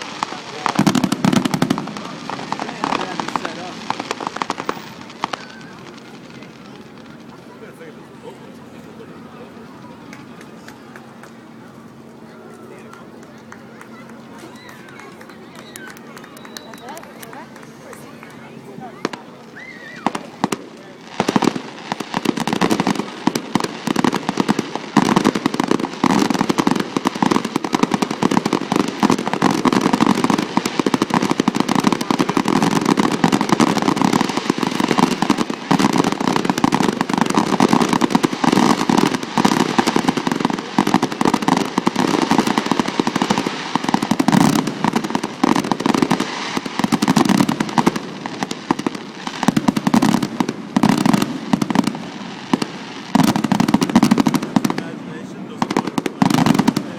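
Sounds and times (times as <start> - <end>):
fireworks rapid bangs: 0.0 - 8.0, 13.6 - 56.9.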